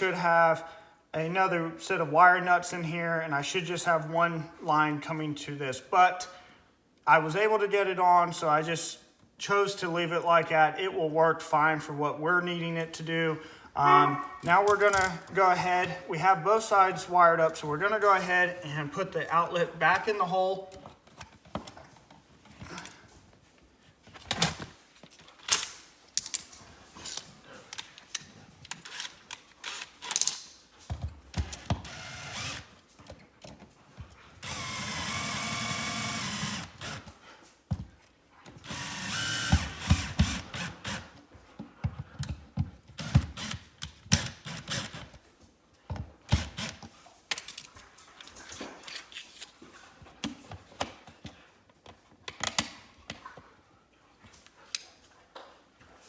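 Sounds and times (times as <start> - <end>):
power drill whirring: 28.8 - 30.2, 31.4 - 32.8, 34.4 - 37.1, 38.6 - 41.1, 43.0 - 45.1, 46.3 - 46.8.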